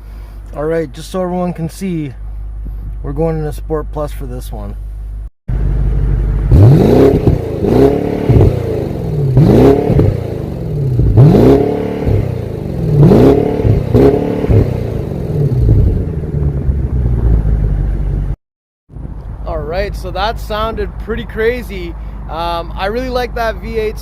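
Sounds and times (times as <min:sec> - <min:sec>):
car exhaust revving: 0:05.1 - 0:18.4.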